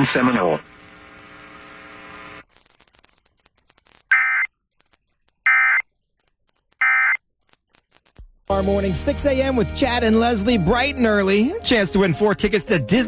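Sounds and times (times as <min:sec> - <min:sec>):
buzzing digital tone bursts: 0:00.0 - 0:04.5
faint steady hum: 0:00.0 - 0:07.2.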